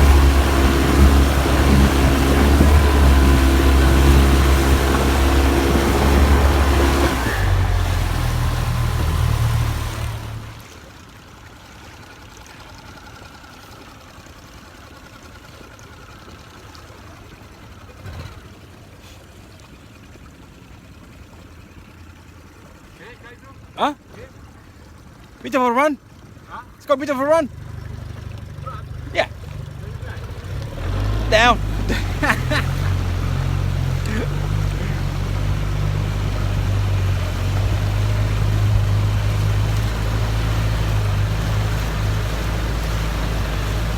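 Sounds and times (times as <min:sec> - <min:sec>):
faint water and wind noise: 0:00.0 - 0:43.9
outboard motor running: 0:00.0 - 0:43.9.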